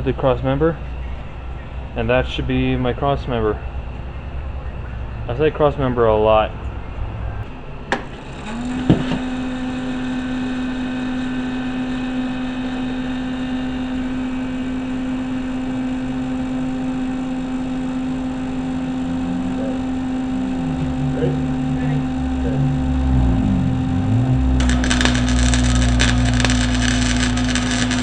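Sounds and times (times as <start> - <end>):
lower hum: 9.7 - 28.0
motor running: 18.1 - 28.0.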